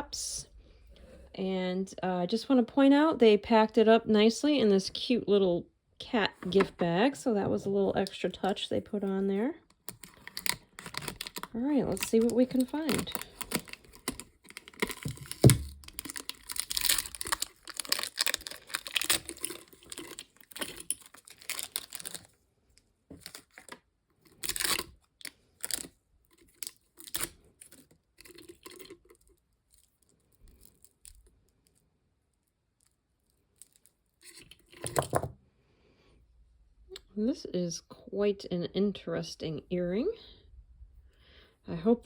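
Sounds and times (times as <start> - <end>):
paper bag crinkling and tearing: 9.8 - 22.4, 23.2 - 29.2.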